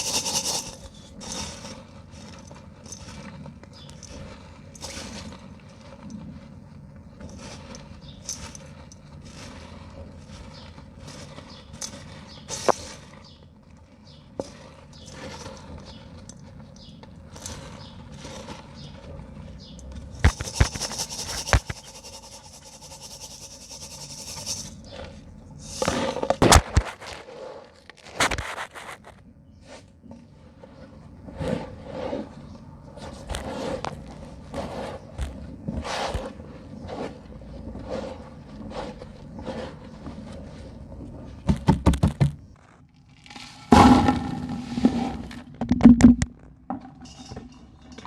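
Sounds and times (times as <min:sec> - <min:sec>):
cement crunching by hand: 0:25.8 - 0:29.2.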